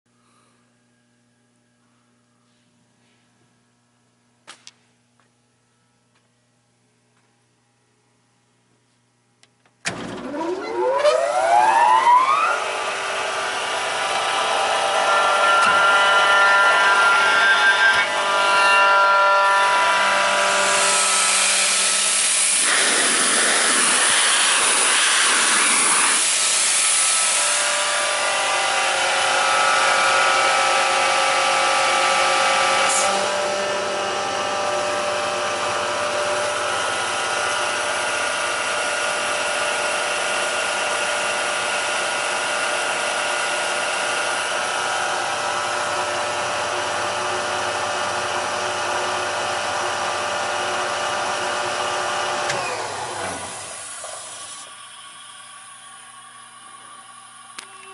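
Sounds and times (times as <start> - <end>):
air compressor running: 9.9 - 57.9
rush of hiss: 22.5 - 27.3.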